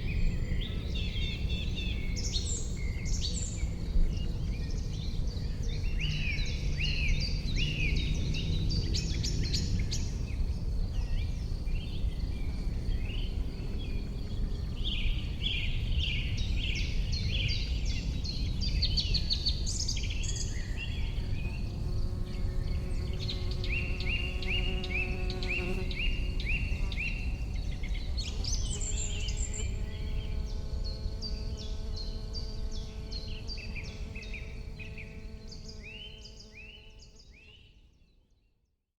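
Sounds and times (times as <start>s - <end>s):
small birds singing: 0.0s - 38.8s.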